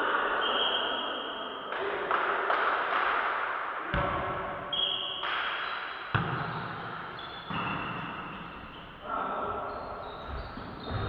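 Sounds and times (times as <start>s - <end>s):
volleyball being struck: 3.9s - 9.0s.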